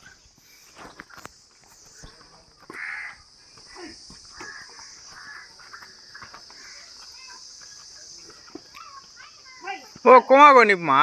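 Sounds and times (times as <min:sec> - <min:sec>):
high-pitched insect drone: 0:00.0 - 0:11.0
short insect calls: 0:00.0 - 0:11.0.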